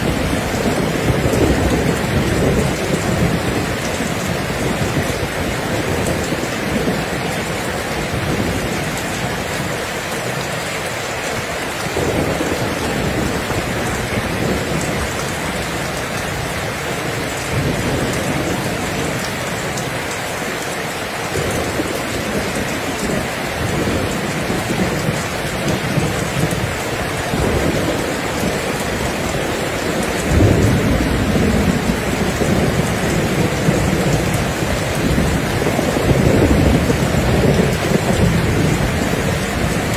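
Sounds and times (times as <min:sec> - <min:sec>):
heavy rain hissing: 0:00.0 - 0:39.9
thunder rumbling: 0:00.0 - 0:39.9.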